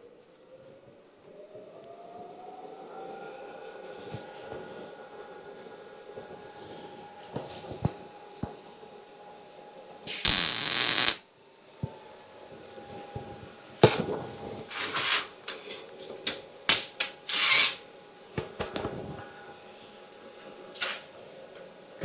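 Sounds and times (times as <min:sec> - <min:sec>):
welder crackling: 0:10.1 - 0:11.2.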